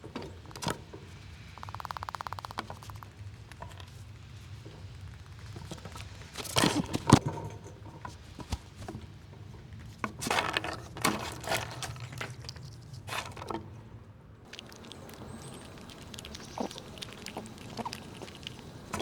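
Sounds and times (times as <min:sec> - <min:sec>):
squirrels cracking nuts: 0:00.4 - 0:07.2, 0:11.3 - 0:13.6, 0:14.5 - 0:19.0.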